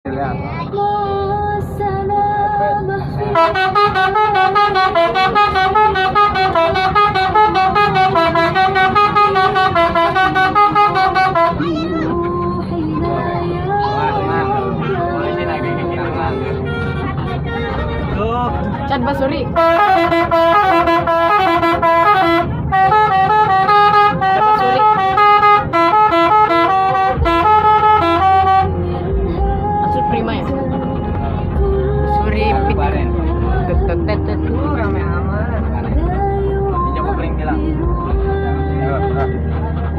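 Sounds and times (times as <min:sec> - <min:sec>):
multi-tone bus air horn tune: 0:03.2 - 0:13.0, 0:13.6 - 0:29.2.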